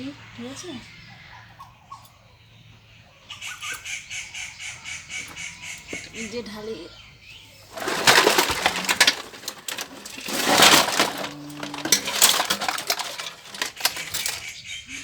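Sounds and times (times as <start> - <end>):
toys clattering and rattling: 7.6 - 14.7.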